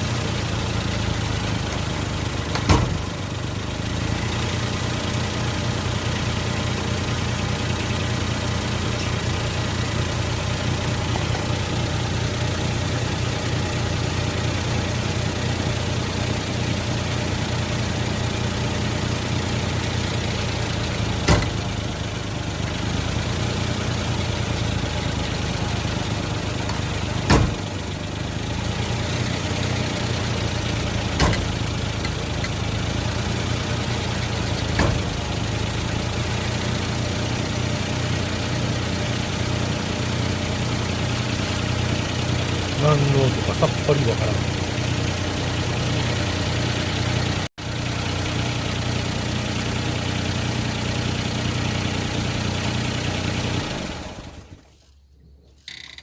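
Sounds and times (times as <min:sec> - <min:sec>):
car engine idling: 0:00.0 - 0:54.9
sharp steering clunk: 0:02.5 - 0:03.2, 0:21.2 - 0:21.7, 0:26.6 - 0:27.8, 0:31.0 - 0:32.6, 0:34.6 - 0:35.3.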